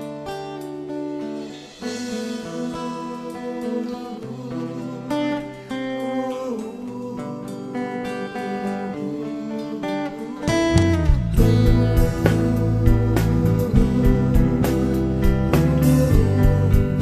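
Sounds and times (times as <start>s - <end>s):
guitar: 0.0s - 17.0s
bass line: 10.7s - 17.0s.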